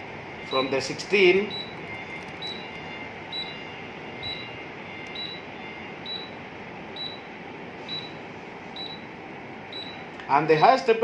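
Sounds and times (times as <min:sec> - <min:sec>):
blower fan running: 0:00.0 - 0:11.0
short high beeps: 0:01.5 - 0:06.4, 0:07.0 - 0:08.2.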